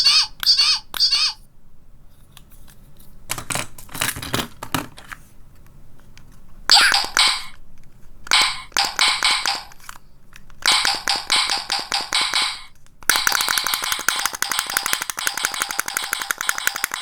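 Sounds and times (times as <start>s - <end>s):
toy rapid clicking rattle: 10.6s - 17.0s.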